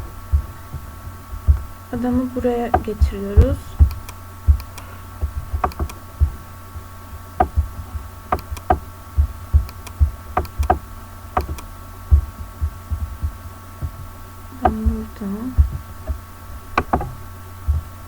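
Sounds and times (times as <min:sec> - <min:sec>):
dull low knocks: 0:00.0 - 0:18.0
steady electrical hum: 0:00.0 - 0:18.0
computer mouse clicking: 0:02.7 - 0:06.4, 0:07.4 - 0:08.9, 0:09.6 - 0:10.8, 0:11.4 - 0:14.9, 0:16.8 - 0:17.8.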